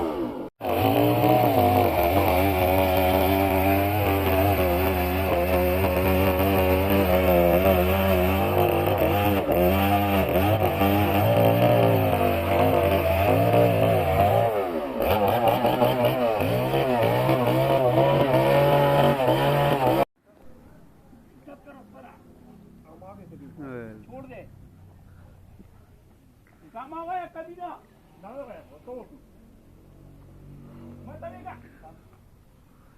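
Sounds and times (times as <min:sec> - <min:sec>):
engine running under load: 0:00.0 - 0:20.1.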